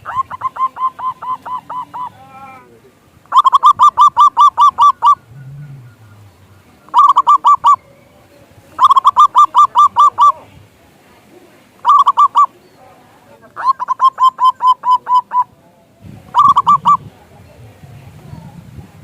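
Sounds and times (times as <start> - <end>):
dove calling staccato notes: 0.0 - 2.5, 3.2 - 7.9, 8.7 - 10.5, 11.7 - 12.6, 13.4 - 15.5, 16.3 - 17.1.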